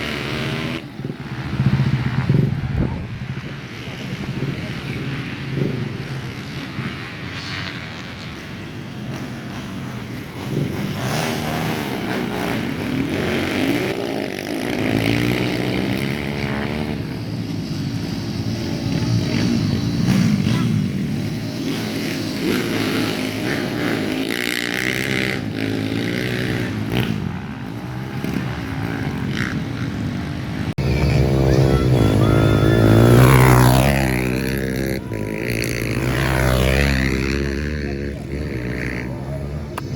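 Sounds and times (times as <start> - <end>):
dirt bike engines revving: 0.0 - 39.9.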